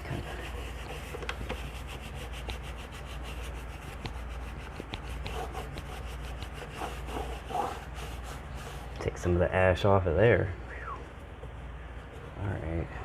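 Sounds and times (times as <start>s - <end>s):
cloth rag wiping a surface: 0.0s - 9.2s.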